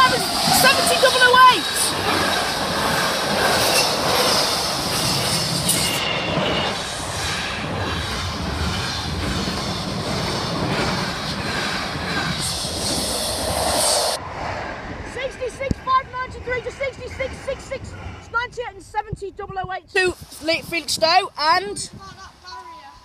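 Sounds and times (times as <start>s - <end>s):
train wheels clattering over rail joints: 0.0s - 14.1s.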